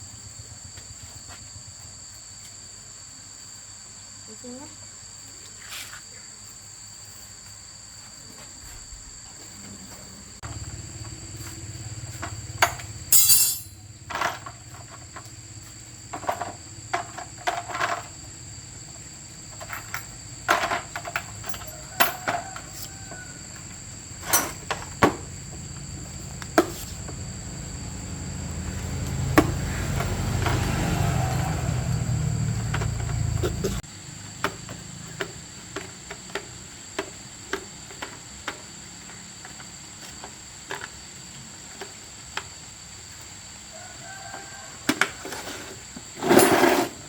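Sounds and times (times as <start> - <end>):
fan motor hum: 22.5 - 35.2.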